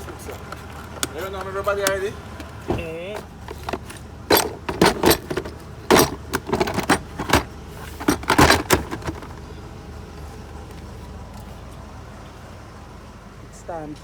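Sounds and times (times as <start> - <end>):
hard objects clicking and clattering: 0.0 - 9.4.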